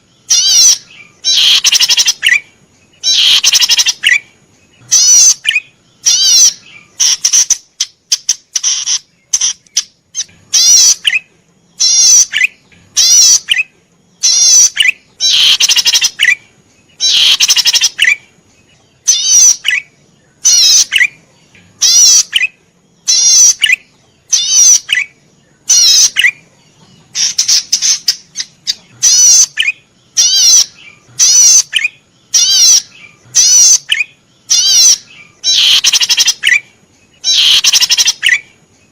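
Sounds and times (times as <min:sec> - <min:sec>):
bird singing buzzy trill: 0:00.0 - 0:38.9.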